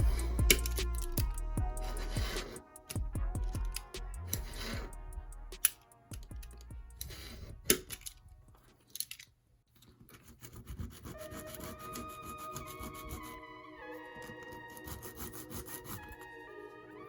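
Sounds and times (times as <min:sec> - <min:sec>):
background music with held notes: 0:00.0 - 0:08.2, 0:11.2 - 0:17.0
rubbing and scraping on model: 0:07.0 - 0:13.4, 0:14.2 - 0:16.2.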